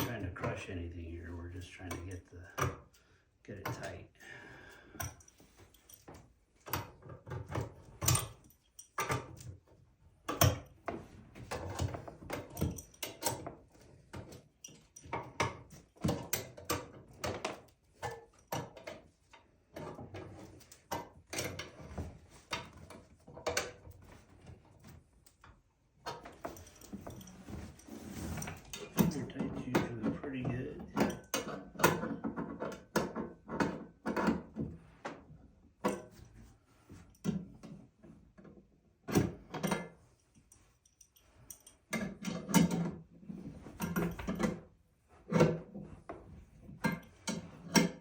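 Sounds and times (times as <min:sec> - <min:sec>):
wrench clicking and knocking on metal: 0:06.6 - 0:09.6.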